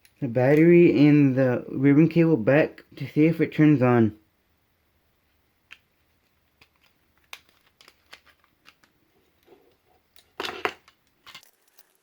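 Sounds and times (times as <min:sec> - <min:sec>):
small plastic parts clicking: 0:05.7 - 0:12.0.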